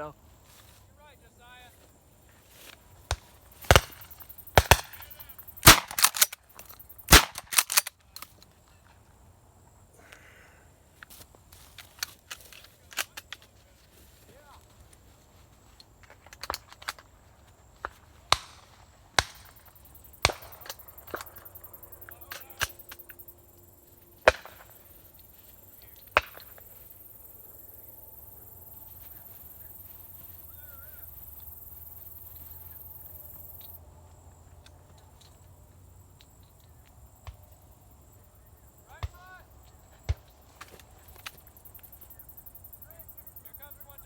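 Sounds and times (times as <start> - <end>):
cicadas buzzing: 0.0 - 12.5, 14.4 - 44.0
sharp cracks and knocks: 2.6 - 8.5, 16.0 - 17.1, 17.8 - 23.2, 24.2 - 25.2, 25.8 - 26.8, 36.2 - 37.5, 38.9 - 41.5.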